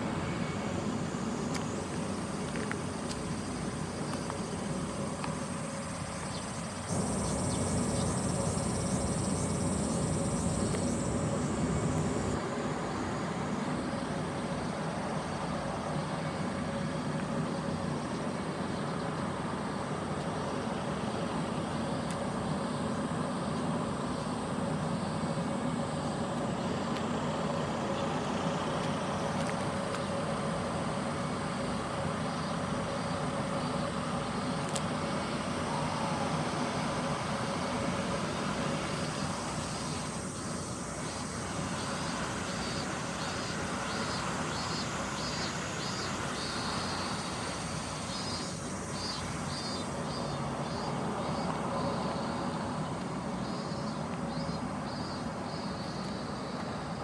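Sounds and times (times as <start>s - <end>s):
constant low hum: 0.0s - 57.0s
traffic noise: 0.0s - 57.0s.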